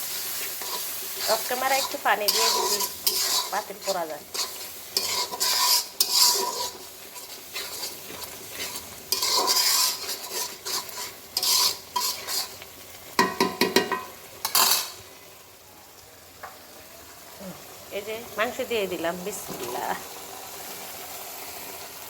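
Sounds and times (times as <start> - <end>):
utensil scraping a cooking pot: 0.0 - 15.0
spices sizzling in oil: 0.0 - 22.0.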